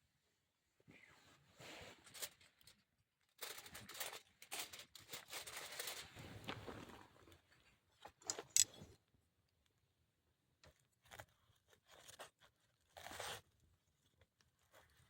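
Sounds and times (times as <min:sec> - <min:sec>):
rustling handling noise: 0:01.3 - 0:07.4, 0:08.1 - 0:08.9.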